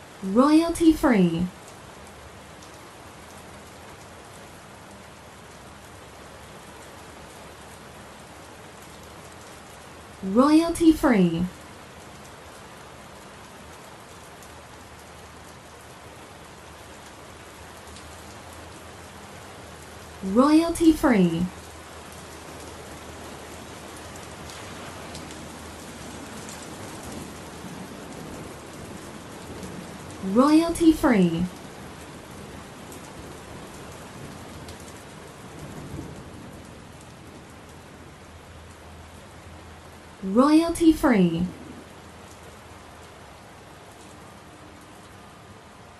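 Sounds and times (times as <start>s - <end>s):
steady rain hiss: 0.0s - 45.9s
low rumble of thunder: 24.6s - 30.2s, 31.5s - 38.4s.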